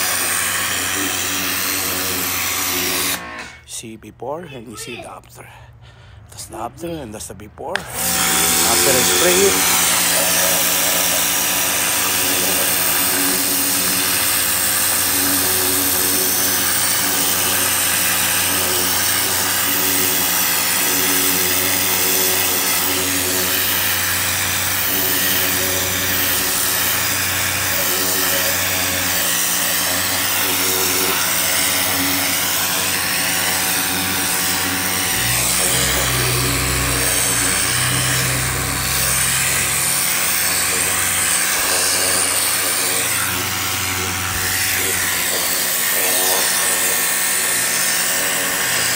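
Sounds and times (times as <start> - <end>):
pressure washer motor hum: 0.0 - 3.8, 5.7 - 48.9
water jet spraying onto carpet: 8.0 - 48.9.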